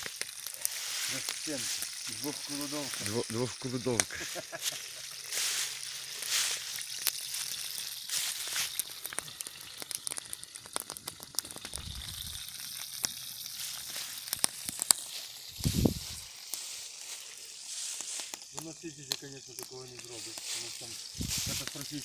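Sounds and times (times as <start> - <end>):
campfire crackling: 0.0 - 22.0.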